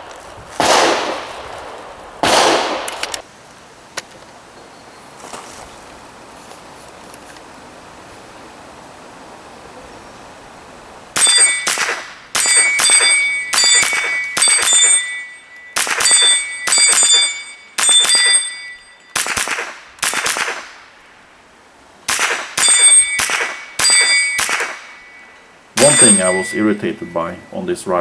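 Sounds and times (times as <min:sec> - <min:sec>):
rifle shots: 0:00.5 - 0:03.2, 0:11.2 - 0:15.1, 0:15.7 - 0:18.4, 0:19.1 - 0:20.9, 0:22.1 - 0:25.2
bullet pinging steel target: 0:11.2 - 0:20.8, 0:22.1 - 0:27.5.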